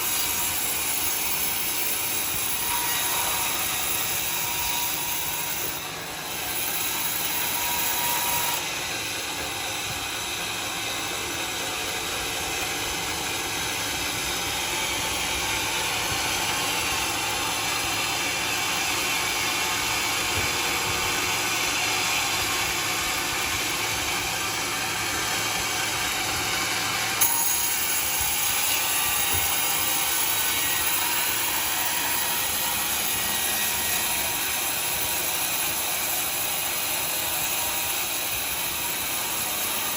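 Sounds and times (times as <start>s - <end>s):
sawmill saw running: 0.0s - 39.9s.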